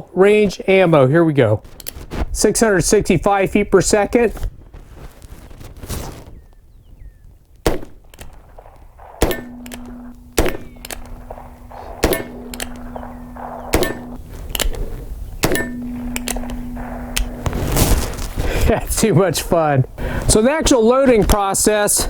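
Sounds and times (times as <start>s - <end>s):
revolver shots: 7.7s - 18.4s
steel target ringing: 9.0s - 19.1s.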